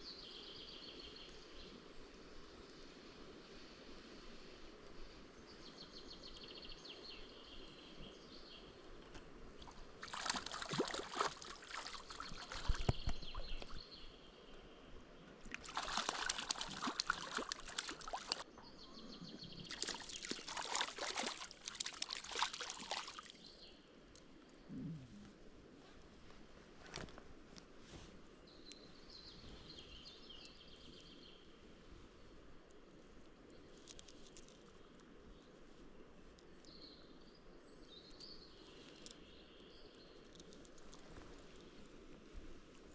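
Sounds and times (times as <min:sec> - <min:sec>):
faint steady background noise: 0:00.0 - 0:42.9
water sloshing and splashing: 0:09.6 - 0:13.8, 0:15.4 - 0:18.4, 0:19.7 - 0:23.5.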